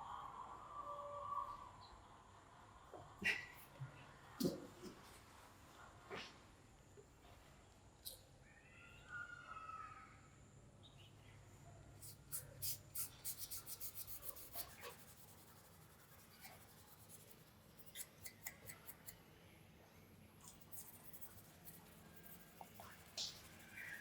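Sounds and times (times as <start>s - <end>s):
quick scratching strokes: 12.0s - 19.2s, 20.4s - 24.0s.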